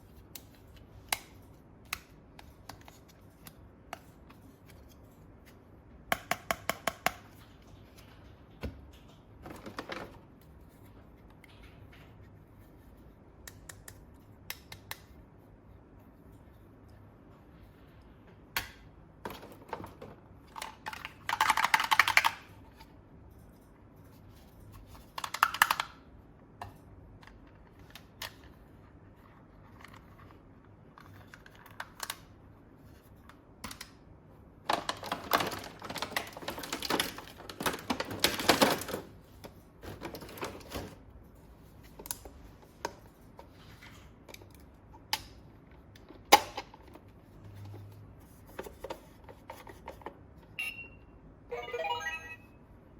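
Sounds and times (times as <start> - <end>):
plastic toy parts clicking: 20.6 - 22.4.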